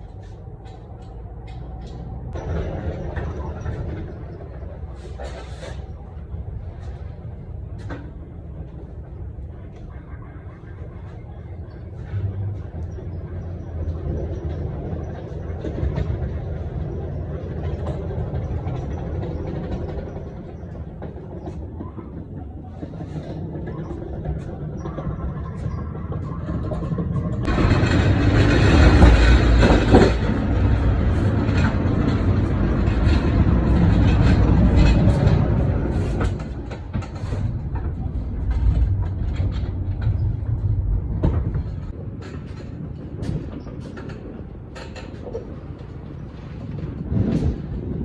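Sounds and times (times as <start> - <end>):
truck engine rumbling: 0.0 - 48.0
knocks and rattles: 11.7 - 48.0.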